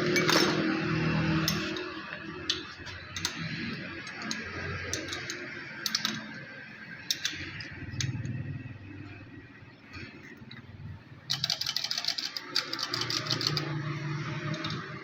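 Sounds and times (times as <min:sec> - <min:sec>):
metal parts clicking and tapping: 0:00.0 - 0:00.7, 0:01.4 - 0:08.4, 0:11.3 - 0:15.0.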